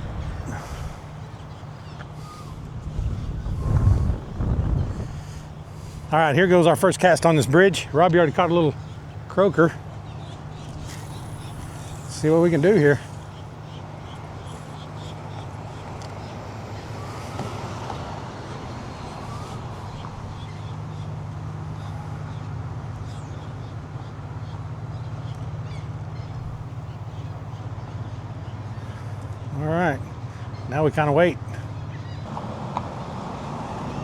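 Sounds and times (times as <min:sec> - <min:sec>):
constant hiss: 0:00.0 - 0:15.1
road traffic drone: 0:00.0 - 0:34.0.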